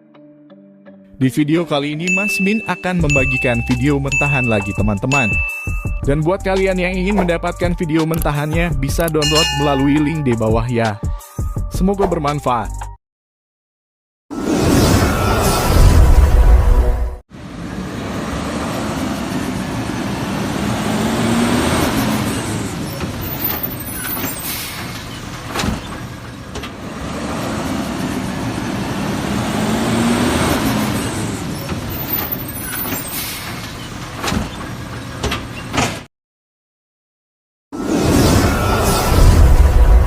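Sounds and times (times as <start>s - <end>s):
garbage truck engine running: 17.4s - 35.7s.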